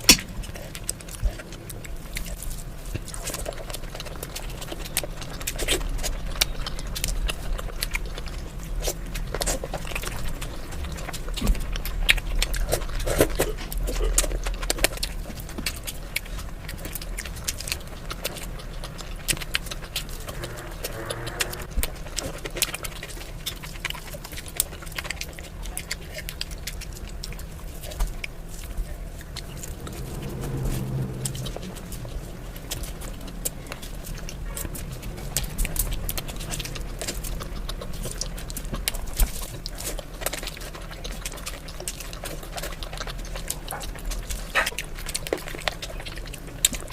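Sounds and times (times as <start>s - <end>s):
chewing and mouth smacks: 0.0s - 46.9s
steady low hum: 0.0s - 46.9s.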